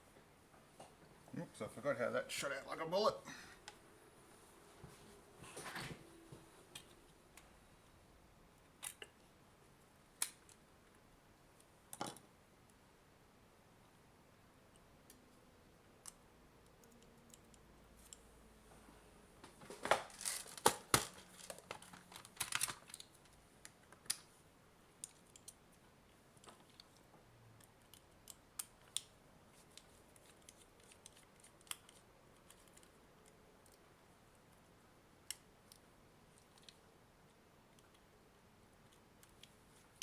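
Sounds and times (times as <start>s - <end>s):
plastic scraping and crackling: 19.7s - 24.2s.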